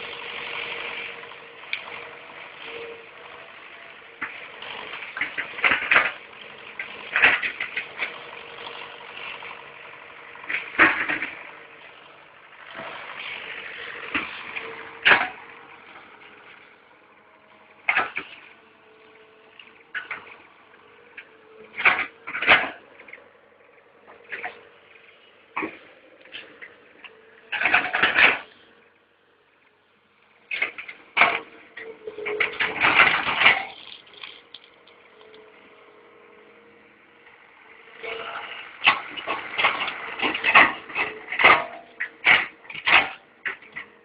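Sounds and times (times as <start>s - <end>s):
excavator clanks and knocks: 0.0s - 16.7s, 17.4s - 28.6s, 30.5s - 36.7s, 37.9s - 44.0s
excavator engine hum: 0.0s - 44.0s.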